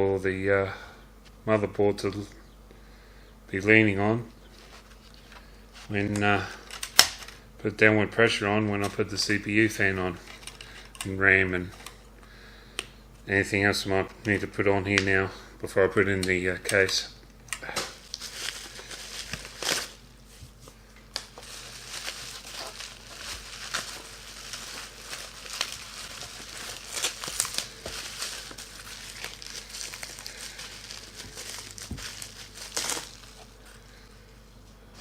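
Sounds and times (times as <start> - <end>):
packaging crinkling and rustling: 17.7 - 34.0.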